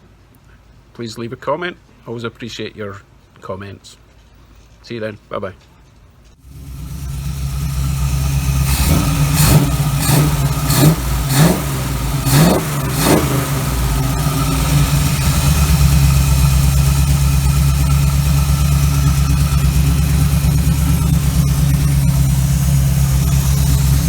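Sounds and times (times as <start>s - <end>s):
car engine revving and idling: 6.4s - 24.0s.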